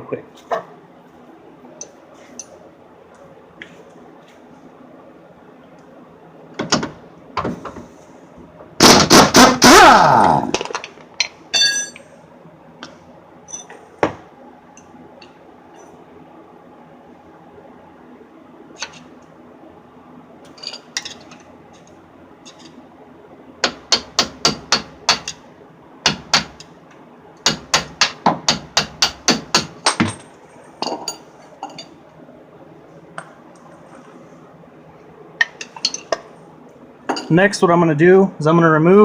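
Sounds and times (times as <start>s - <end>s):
hammer striking metal: 11.6s - 12.1s.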